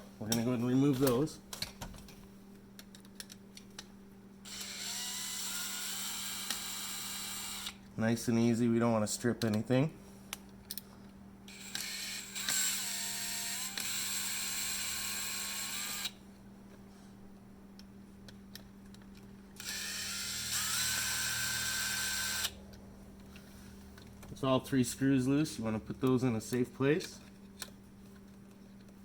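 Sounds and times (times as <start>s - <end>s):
cordless drill motor whine: 4.5s - 7.8s, 11.5s - 16.2s, 19.6s - 22.6s.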